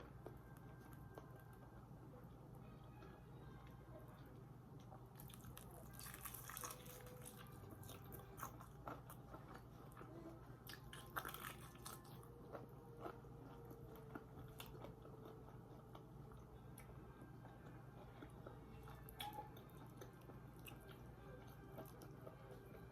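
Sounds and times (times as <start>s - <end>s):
person chewing crunchy food: 4.8s - 22.9s.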